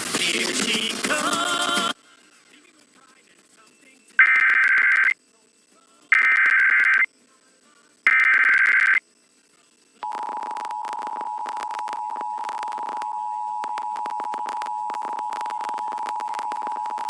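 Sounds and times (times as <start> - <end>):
screeching digital data tones: 4.2 - 5.2, 6.2 - 7.1, 8.1 - 9.0.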